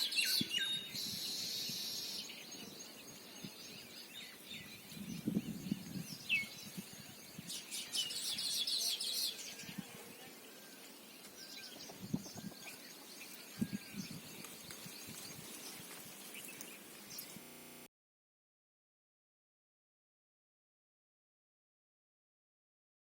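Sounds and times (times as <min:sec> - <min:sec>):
birds chirping and calling: 0:00.0 - 0:17.5.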